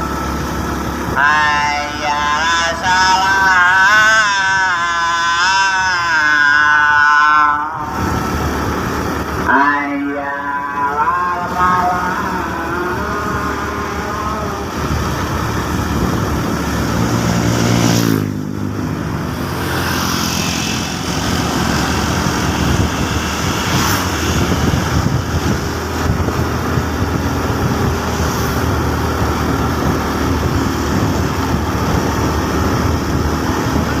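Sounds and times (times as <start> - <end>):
vehicle engine and road noise: 0.0 - 34.0.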